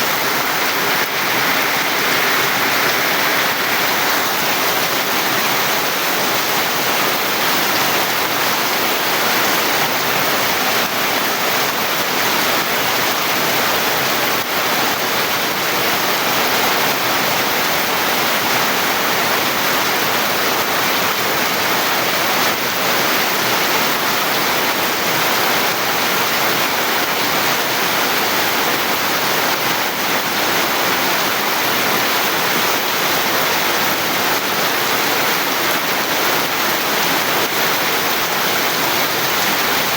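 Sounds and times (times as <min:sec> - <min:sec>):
heavy rain hissing: 0:00.0 - 0:10.6.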